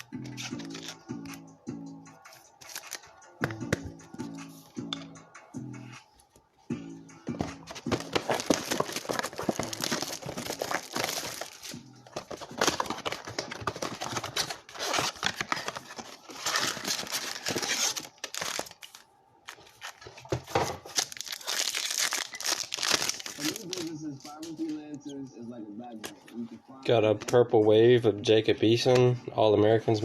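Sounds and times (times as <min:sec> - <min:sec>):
plastic card wrappers crinkling and tearing: 0:00.3 - 0:01.4, 0:02.6 - 0:03.1, 0:07.7 - 0:25.0.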